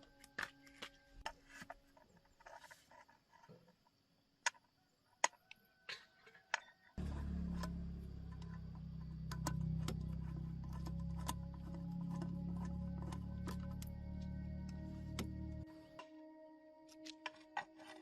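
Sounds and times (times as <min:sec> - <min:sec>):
steady low hum: 0:07.0 - 0:15.7.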